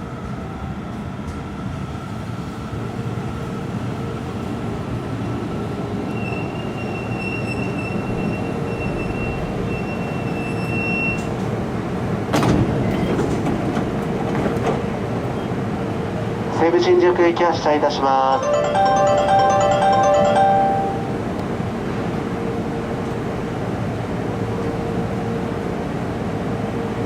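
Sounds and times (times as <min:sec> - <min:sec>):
high brake squeal: 0:06.0 - 0:11.4
electric train pulling in: 0:14.8 - 0:27.0.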